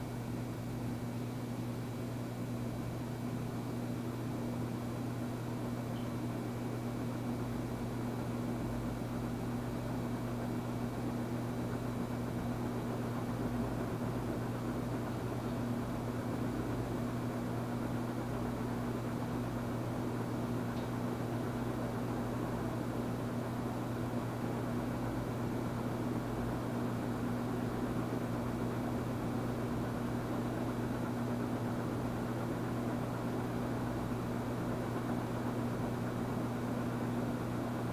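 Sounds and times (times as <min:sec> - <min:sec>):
ceiling fan running: 0:00.0 - 0:37.9.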